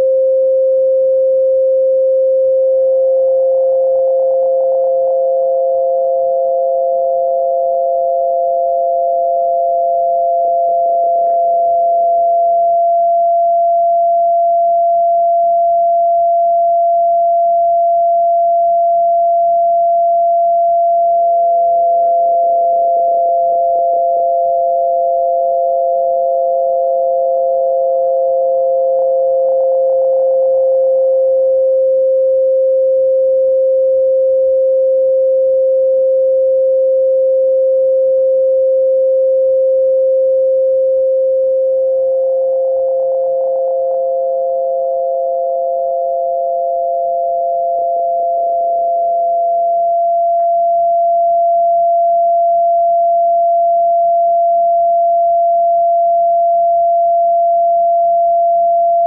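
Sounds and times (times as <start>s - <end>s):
high sine tone: 0.0s - 59.0s
low sine tone: 0.0s - 59.0s.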